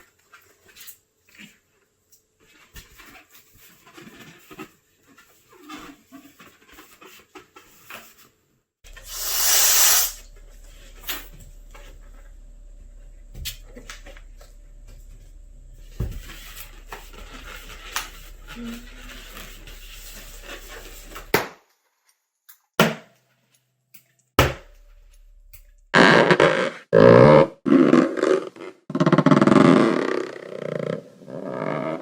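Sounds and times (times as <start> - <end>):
balloons squeaking: 9.0 - 10.2, 15.9 - 21.4, 25.9 - 32.0
loud rush of air: 9.0 - 10.2
low hum: 10.2 - 21.3, 24.6 - 26.0.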